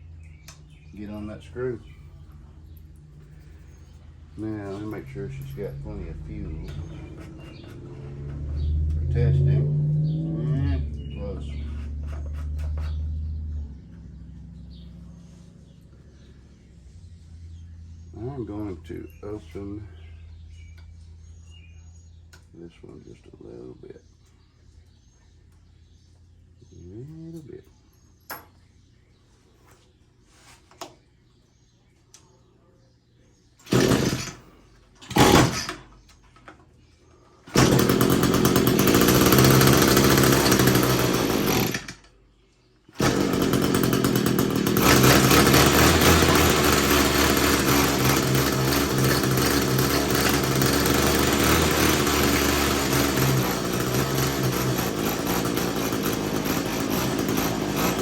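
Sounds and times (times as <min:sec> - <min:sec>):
string trimmer engine starting: 0:04.4 - 0:09.8, 0:33.6 - 0:35.9, 0:37.5 - 0:42.1, 0:43.0 - 0:58.0
string trimmer engine running: 0:33.7 - 0:35.8, 0:37.5 - 0:42.0, 0:43.0 - 0:58.0.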